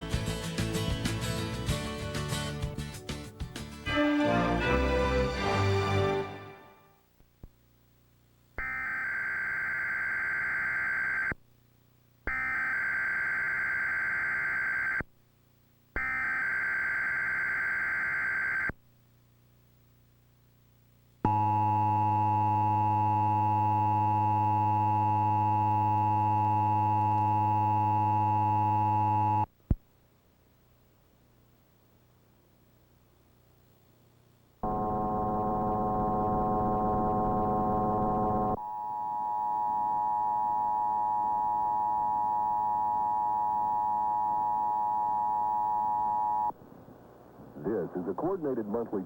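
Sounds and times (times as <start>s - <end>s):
two-tone attention signal: 34.6s - 42.1s.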